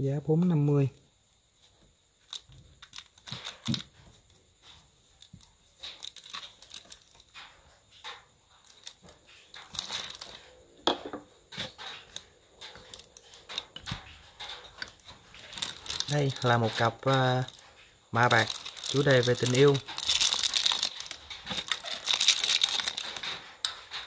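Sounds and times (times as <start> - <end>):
plastic wrapping crinkling: 2.2 - 10.6, 11.5 - 24.0.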